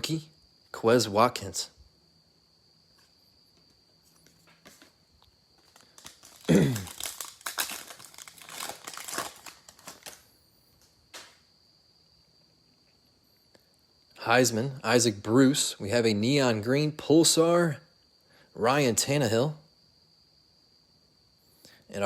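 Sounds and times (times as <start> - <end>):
foil wrapper crinkling: 5.6 - 10.3
foil wrapper ripping: 5.6 - 10.3.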